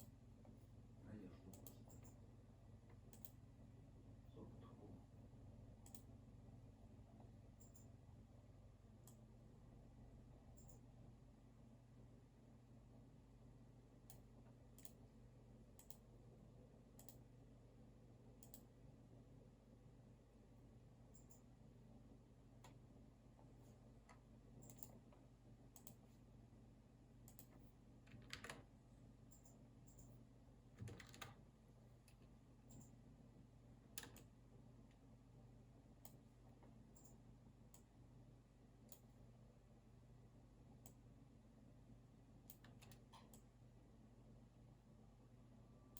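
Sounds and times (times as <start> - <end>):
faint low hum: 0.0 - 45.9
sharp computer clicks: 1.5 - 2.2, 3.1 - 3.4, 5.8 - 6.1, 10.6 - 10.8, 15.8 - 16.1, 17.0 - 17.3, 18.4 - 18.7, 24.6 - 25.0, 25.8 - 26.0, 27.2 - 27.7, 42.5 - 43.5.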